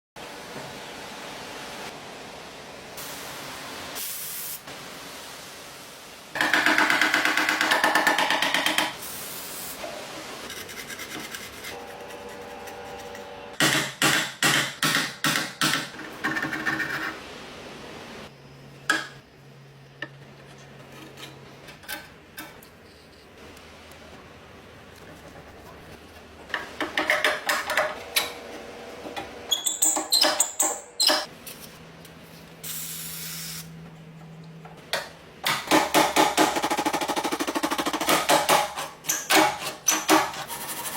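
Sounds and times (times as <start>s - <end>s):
fast rasping tool scraping: 10.5s - 13.2s.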